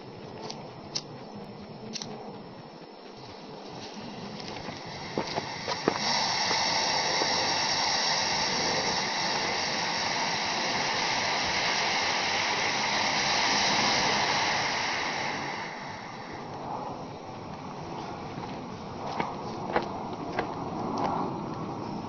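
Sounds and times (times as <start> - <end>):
steady fizzing hiss: 0.0 - 22.0.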